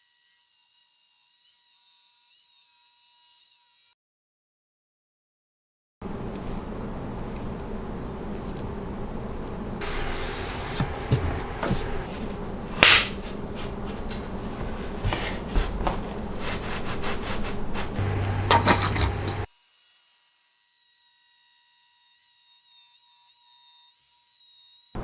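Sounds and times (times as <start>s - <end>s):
rubbing and scraping on wood: 6.0s - 19.5s
knocks on wood: 10.6s - 16.7s.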